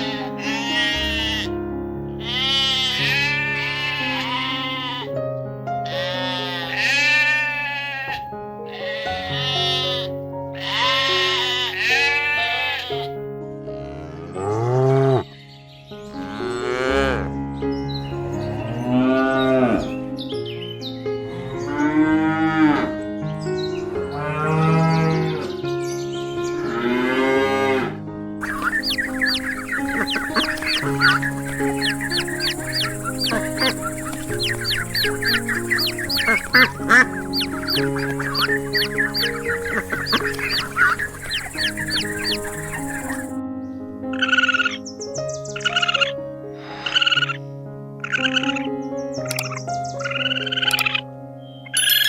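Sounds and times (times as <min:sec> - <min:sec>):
animal bleating: 0:00.0 - 0:01.6, 0:02.2 - 0:05.2, 0:05.8 - 0:13.2, 0:18.0 - 0:20.1, 0:28.4 - 0:43.3
background music with held notes: 0:00.0 - 0:52.0
cattle mooing: 0:02.2 - 0:05.1, 0:13.8 - 0:15.2, 0:16.2 - 0:17.3, 0:18.0 - 0:20.1, 0:21.3 - 0:22.9, 0:28.4 - 0:43.3.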